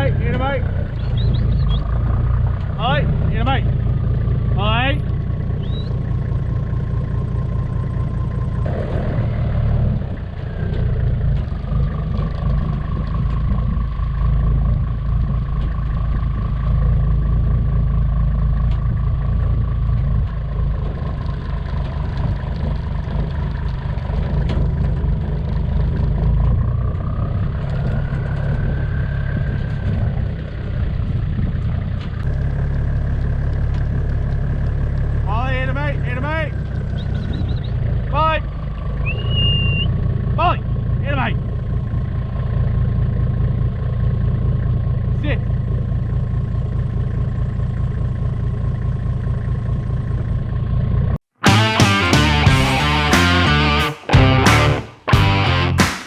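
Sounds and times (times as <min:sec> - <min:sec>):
vehicle engine rumbling: 0:00.0 - 0:56.0
steady whine: 0:51.4 - 0:56.0.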